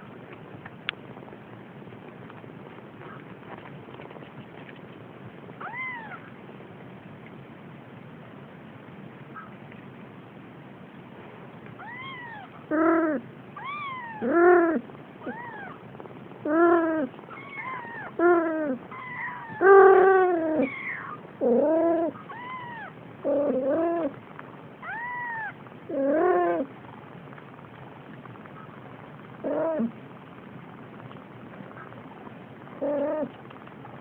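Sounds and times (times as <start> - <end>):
cat meowing and yowling: 5.6 - 6.3, 11.8 - 15.8, 16.5 - 24.1, 24.8 - 26.7.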